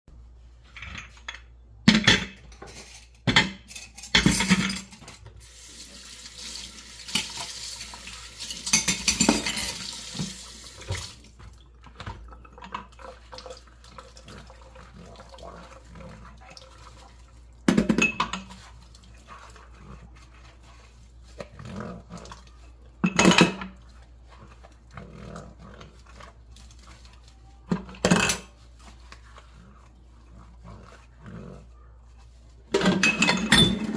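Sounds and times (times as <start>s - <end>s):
crockery and utensils clattering: 0.8s - 5.3s, 8.4s - 10.4s, 17.7s - 18.6s, 32.7s - 33.9s.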